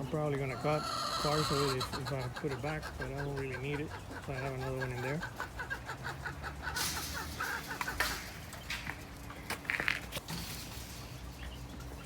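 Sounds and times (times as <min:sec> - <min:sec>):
rapid poultry calls: 0:00.0 - 0:09.4
rustling and scraping: 0:06.8 - 0:11.8.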